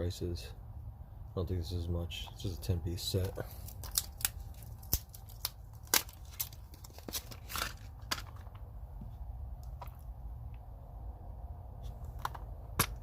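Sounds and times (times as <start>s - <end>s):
packaging crinkling: 3.2s - 8.5s.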